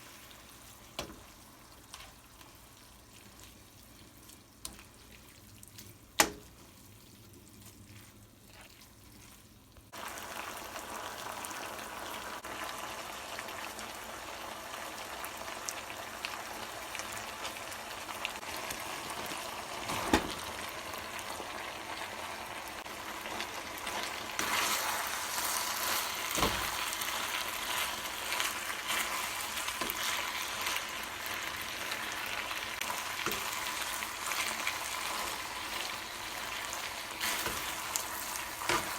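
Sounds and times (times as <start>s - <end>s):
food sizzling in a hot pan: 9.9s - 38.9s.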